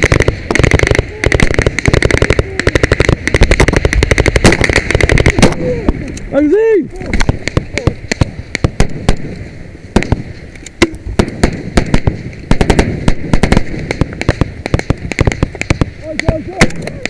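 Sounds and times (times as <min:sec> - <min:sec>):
rifles firing single shots: 0:00.0 - 0:17.0.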